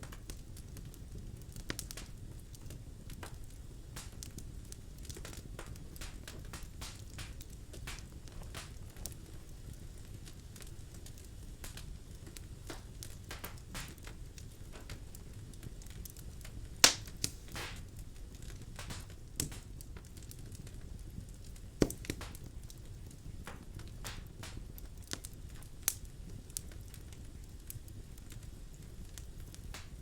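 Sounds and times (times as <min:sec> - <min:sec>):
logs crackling in fireplace: 0:00.0 - 0:30.0
low rumble of flames: 0:00.0 - 0:30.0
loud sharp pops: 0:12.7 - 0:14.0, 0:16.8 - 0:17.9, 0:21.8 - 0:22.4.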